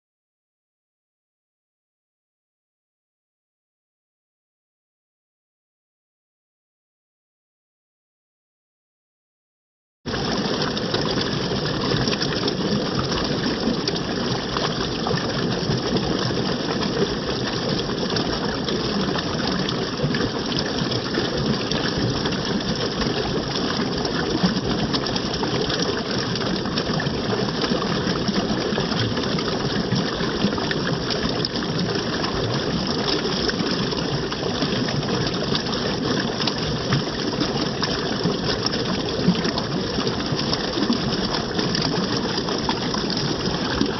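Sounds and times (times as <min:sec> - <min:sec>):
water rushing and splashing: 0:10.1 - 0:43.9.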